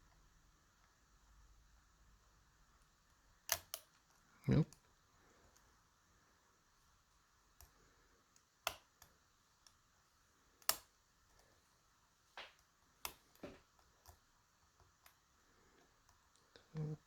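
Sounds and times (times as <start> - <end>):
small metal clicks of lock picking: 3.5 - 3.9.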